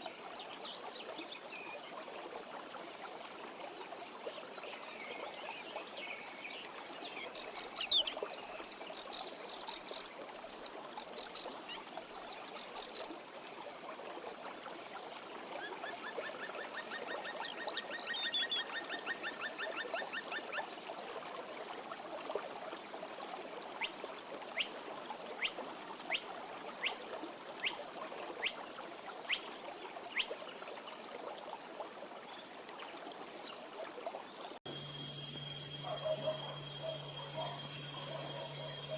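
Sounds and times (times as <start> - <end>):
stream running: 0.0 - 38.9
birds calling: 34.7 - 38.9.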